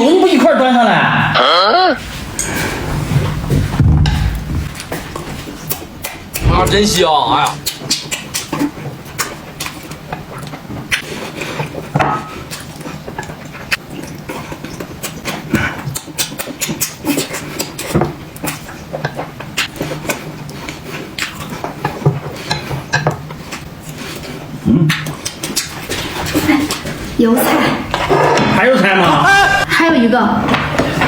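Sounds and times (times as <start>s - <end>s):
low steady hum: 1.0s - 7.6s
chewing and lip-smacking: 7.4s - 27.2s.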